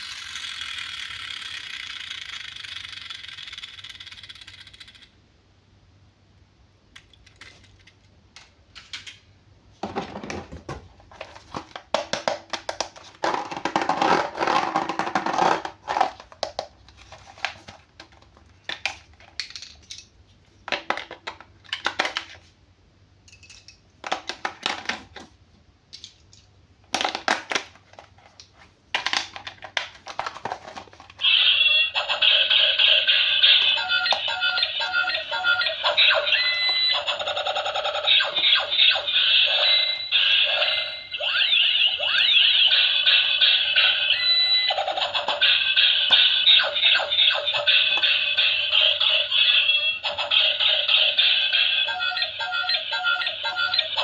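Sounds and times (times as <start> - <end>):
plastic parts clicking: 7.0 - 9.2, 9.9 - 20.1, 25.9 - 31.2.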